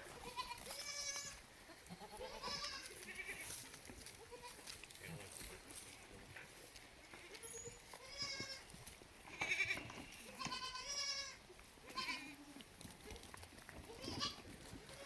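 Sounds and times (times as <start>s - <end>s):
goats bleating: 0.1s - 3.6s, 4.2s - 4.8s, 7.2s - 12.5s, 13.8s - 15.0s.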